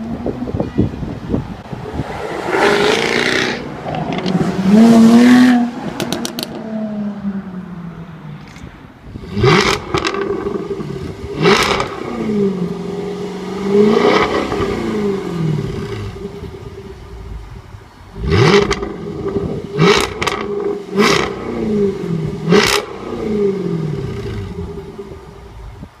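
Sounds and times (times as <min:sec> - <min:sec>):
car engine revving: 0:01.8 - 0:25.5
exhaust pops and crackles: 0:09.5 - 0:12.0, 0:18.5 - 0:21.5.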